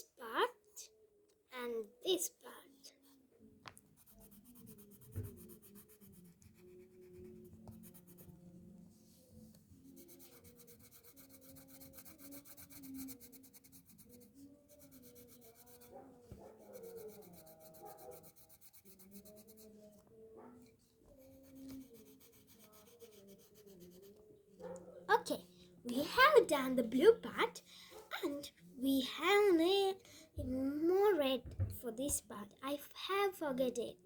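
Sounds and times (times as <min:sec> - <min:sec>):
pencil scratching on paper: 0:03.9 - 0:25.4.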